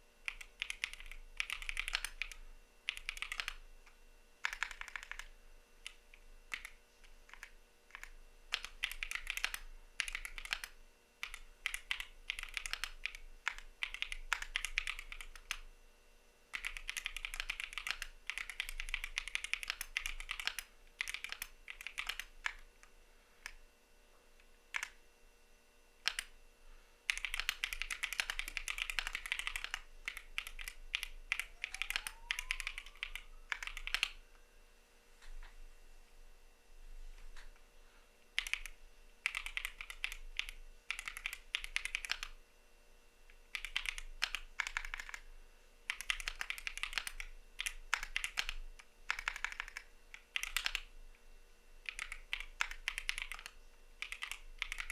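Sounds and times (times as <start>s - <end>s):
mechanical keyboard typing: 0.3s - 3.6s, 4.4s - 15.7s, 16.5s - 22.7s, 24.7s - 25.0s, 26.0s - 26.3s, 27.1s - 34.2s, 38.4s - 42.4s, 43.5s - 45.3s, 45.9s - 50.9s, 51.8s - 54.9s.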